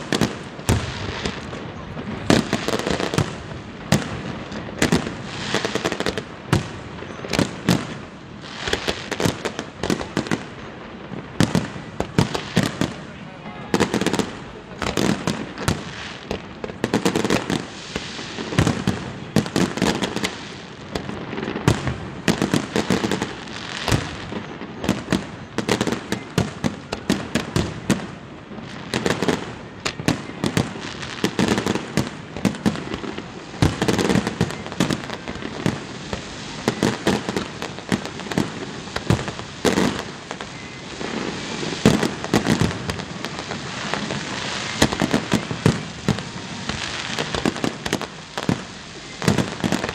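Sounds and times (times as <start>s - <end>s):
fireworks bangs: 0.0s - 49.9s.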